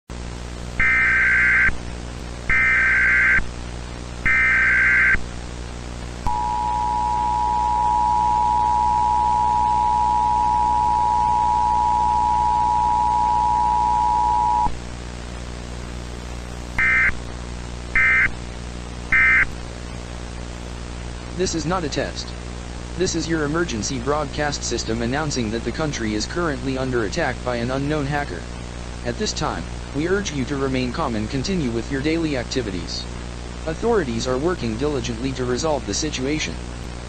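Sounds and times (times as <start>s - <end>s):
hiss and hum: 0.1s - 37.0s
warbling digital data bursts: 0.8s - 1.7s, 2.5s - 3.4s, 4.3s - 5.2s
two-tone attention signal: 6.3s - 14.7s.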